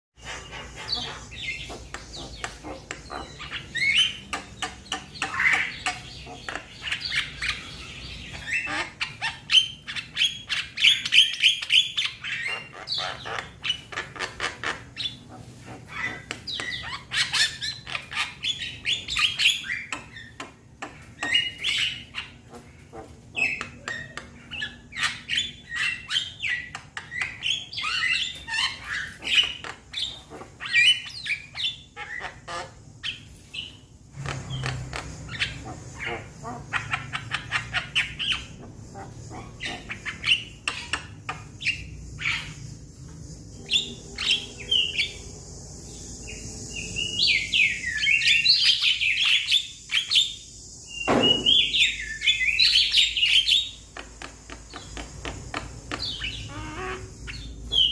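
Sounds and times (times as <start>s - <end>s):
myna chattering and squawking: 0.2s - 31.4s, 34.2s - 42.5s.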